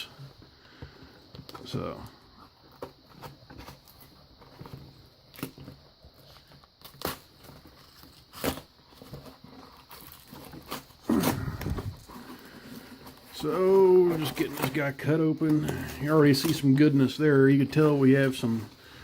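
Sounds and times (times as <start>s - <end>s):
tape and cardboard tearing: 5.3s - 13.2s.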